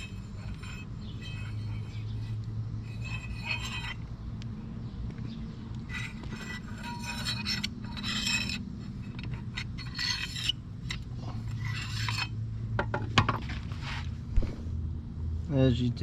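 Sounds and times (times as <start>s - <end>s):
metal parts scraping: 0.0s - 4.1s, 5.9s - 12.4s
low hum: 0.0s - 12.8s.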